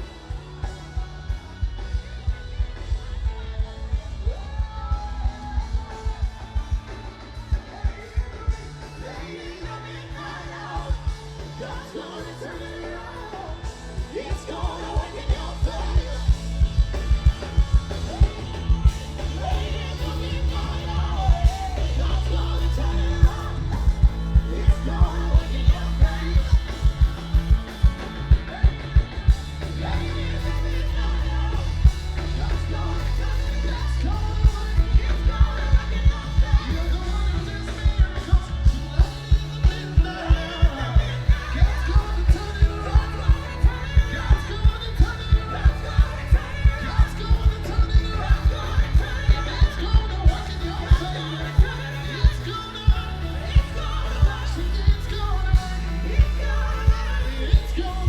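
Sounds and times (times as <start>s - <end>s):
heavy bass: 0.0s - 58.0s
live gospel band music: 0.0s - 58.0s
people singing: 0.0s - 58.0s
steady drum beat: 0.0s - 58.0s.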